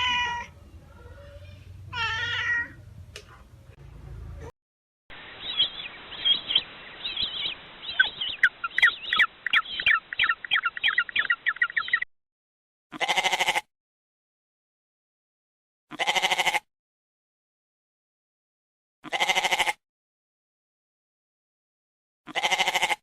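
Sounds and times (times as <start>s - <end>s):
bird chirping: 5.2s - 12.1s.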